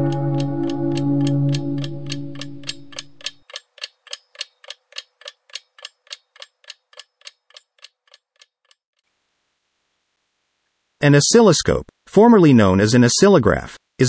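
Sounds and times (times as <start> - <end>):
held music chord: 0.0 - 3.3
clock ticking: 0.0 - 8.8.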